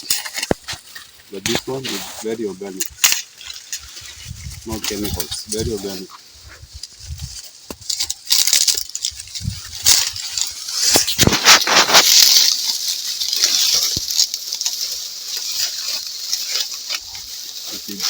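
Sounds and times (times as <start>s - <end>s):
dry maize leaves rustling: 0.0s - 18.0s
stalks snapping: 2.8s - 3.9s, 7.7s - 17.2s.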